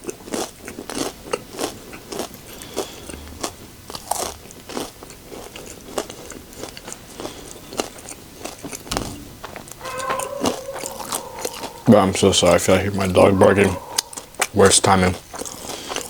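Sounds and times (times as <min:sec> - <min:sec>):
crunching and chewing chips: 0:00.0 - 0:09.1.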